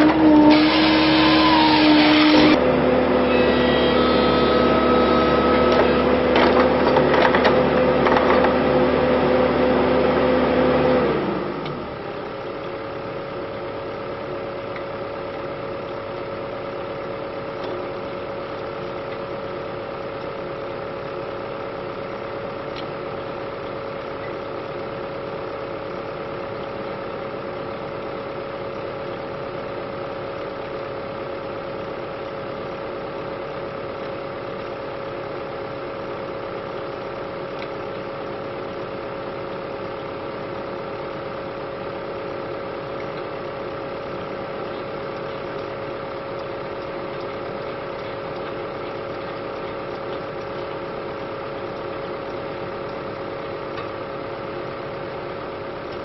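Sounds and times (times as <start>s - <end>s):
excavator engine and hydraulics: 0.0s - 56.0s.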